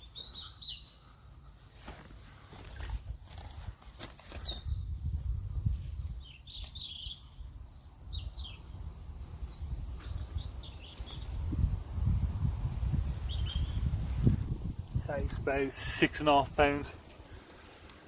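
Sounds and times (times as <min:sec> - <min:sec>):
small birds chirping: 0:00.0 - 0:18.0
low gusting rumble: 0:11.2 - 0:15.7.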